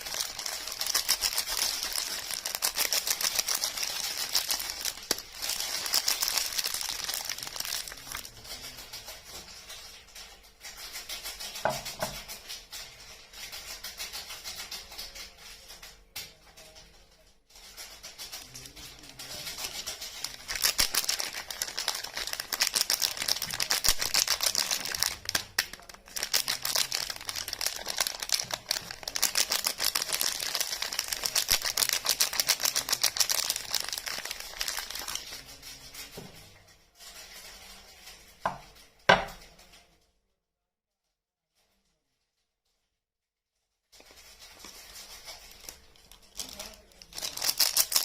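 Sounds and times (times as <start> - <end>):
wrapper crinkling and tearing: 0.0 - 9.0, 17.6 - 36.1, 44.0 - 48.0.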